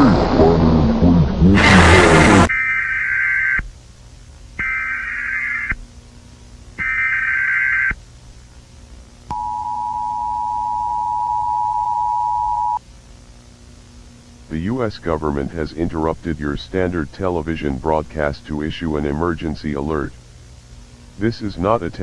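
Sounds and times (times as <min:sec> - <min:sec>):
data burst tones: 0:04.6 - 0:05.8, 0:06.8 - 0:08.0
two-tone attention signal: 0:09.3 - 0:12.8.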